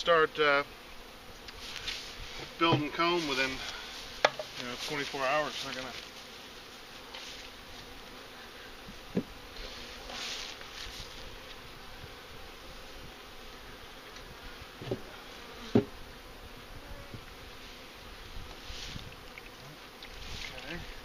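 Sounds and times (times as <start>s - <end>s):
honeybees buzzing: 0.0s - 21.0s.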